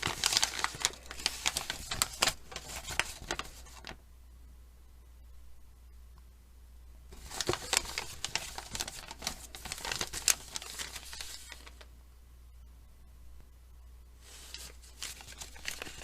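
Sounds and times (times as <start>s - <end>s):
paper crumpling by hand: 0.0s - 4.0s, 7.1s - 11.9s, 14.2s - 16.0s.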